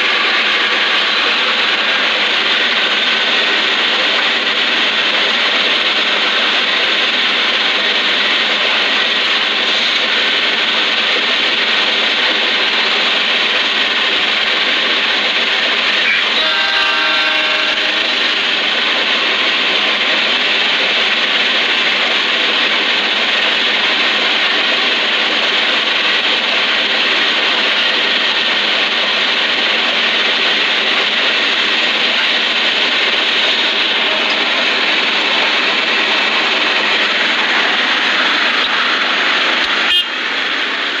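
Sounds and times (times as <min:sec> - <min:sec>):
train running on rails: 0:00.0 - 0:41.0
locomotive horn blast: 0:16.0 - 0:18.1, 0:39.9 - 0:40.2.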